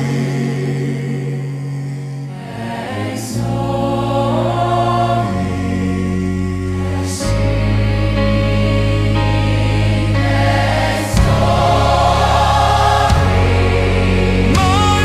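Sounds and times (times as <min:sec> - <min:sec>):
choir singing: 0:00.0 - 0:15.0
sustained chords: 0:00.0 - 0:15.0
deep bass: 0:03.4 - 0:15.0.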